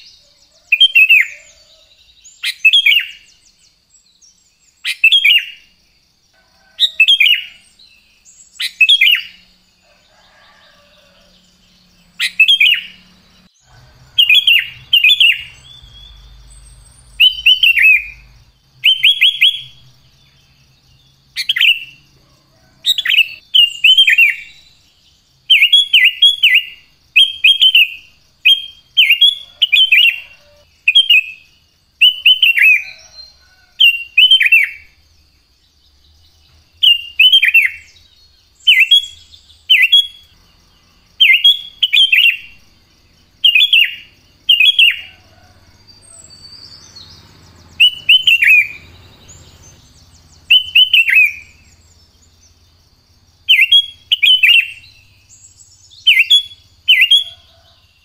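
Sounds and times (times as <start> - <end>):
bulbul singing: 0.0 - 6.0, 6.6 - 58.0.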